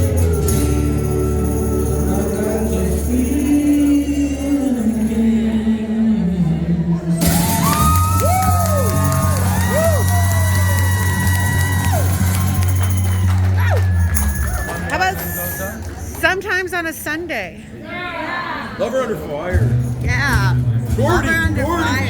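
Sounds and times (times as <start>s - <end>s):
person singing: 0.0s - 10.1s
live acoustic band music: 0.0s - 17.5s, 19.4s - 22.0s
audience cheering and whooping: 7.2s - 16.2s.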